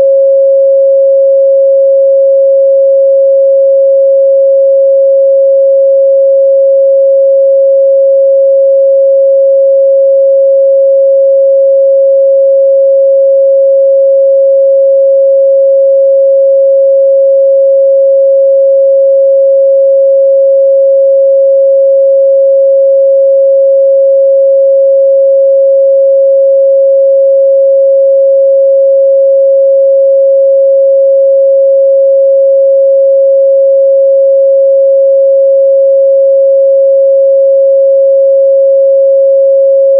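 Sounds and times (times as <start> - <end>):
sine-wave test tone: 0.0 - 39.9.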